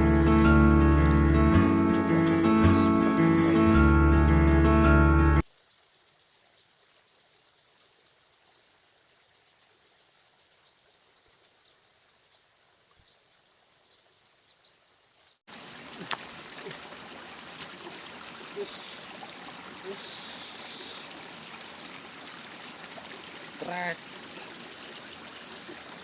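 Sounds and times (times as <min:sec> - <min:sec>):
river water rushing: 0:00.0 - 0:05.4, 0:15.5 - 0:26.0.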